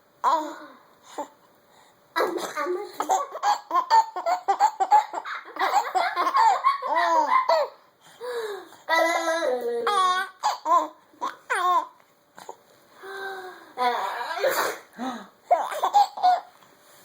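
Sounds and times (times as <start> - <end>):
baby belly-laughing: 3.0 - 7.8, 15.5 - 16.5.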